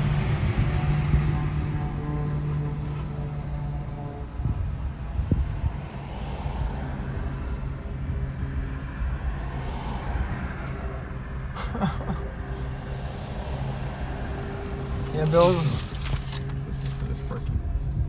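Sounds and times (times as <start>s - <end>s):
low outdoor rumble: 0.0s - 18.0s
propeller plane engine droning: 0.0s - 18.0s.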